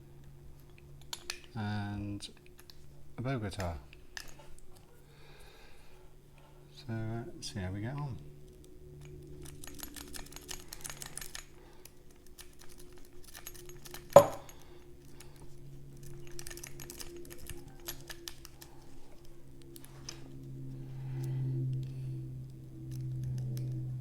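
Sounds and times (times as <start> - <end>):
low hum: 0.0 - 24.0
lock pick clicks and scratches: 0.6 - 1.6, 8.5 - 15.2, 16.0 - 20.4, 22.9 - 23.8.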